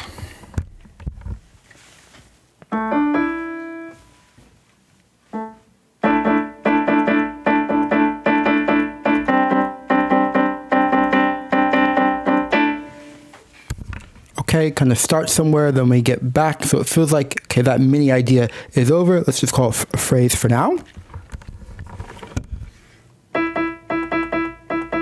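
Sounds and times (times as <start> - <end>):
piano playing chords: 2.7 - 4.2, 5.3 - 13.3, 23.3 - 25.0.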